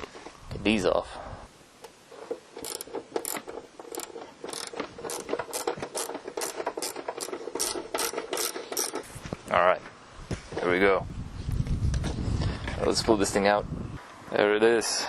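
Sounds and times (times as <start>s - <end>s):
ratchet wrench clicking: 2.2s - 9.0s.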